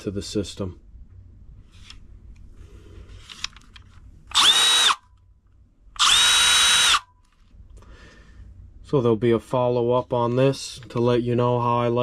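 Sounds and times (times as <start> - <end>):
impact driver motor whine: 4.3 - 5.0, 6.0 - 7.1.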